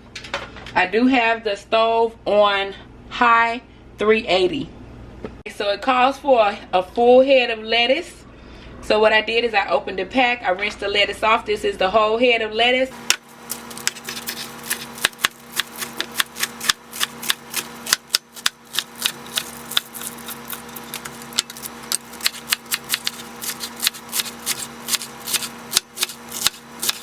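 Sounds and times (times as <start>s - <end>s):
knife chopping lettuce on board: 13.1s - 27.0s.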